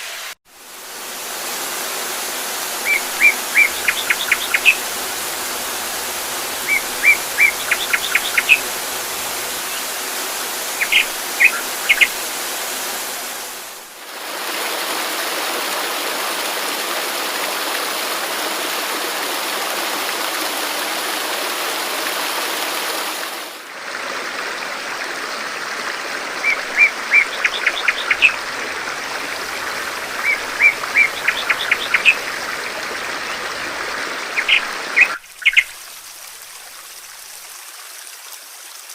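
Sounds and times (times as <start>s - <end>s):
rushing water: 0.0s - 38.9s
bird chirping: 2.8s - 4.9s, 6.6s - 10.0s, 10.7s - 12.2s, 26.5s - 28.4s, 30.2s - 32.3s, 34.4s - 35.7s.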